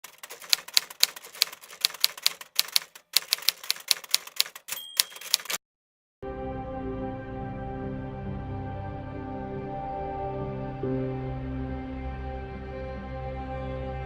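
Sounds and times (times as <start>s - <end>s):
typewriter bell ringing: 0.0s - 5.6s
typewriter key strikes: 0.0s - 5.6s
background music: 6.2s - 14.0s.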